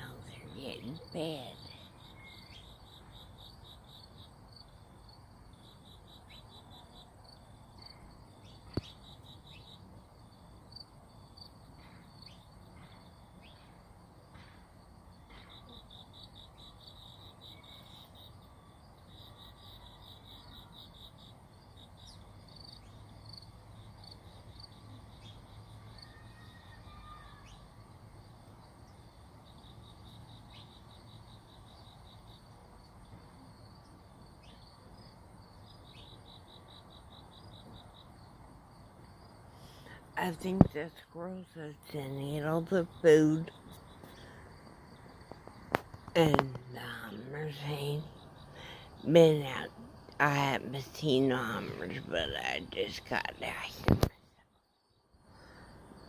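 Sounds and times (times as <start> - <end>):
insects chirping in trills: 0.0 - 56.0.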